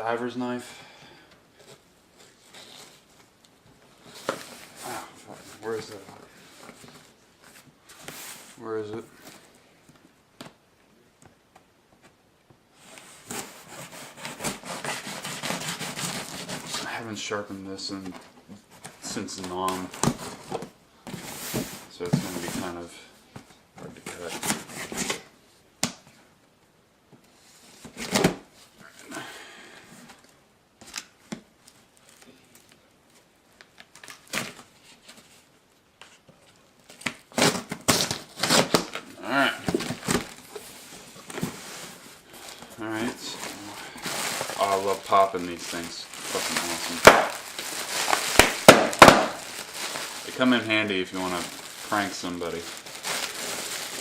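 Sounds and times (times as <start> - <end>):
plastic wrapping rustling: 12.8 - 17.3, 30.0 - 54.0
knife scraping cardboard: 13.2 - 16.8.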